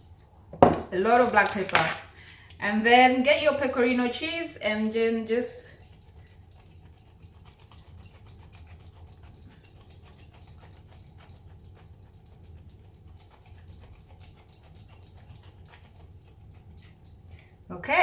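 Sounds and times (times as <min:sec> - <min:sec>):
cheese grating rasps: 0:01.1 - 0:02.4.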